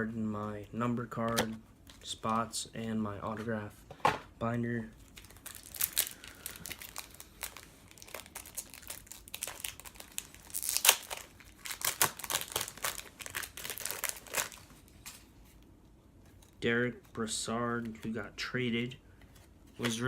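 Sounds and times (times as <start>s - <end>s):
plastic packaging crinkling: 5.0s - 15.2s.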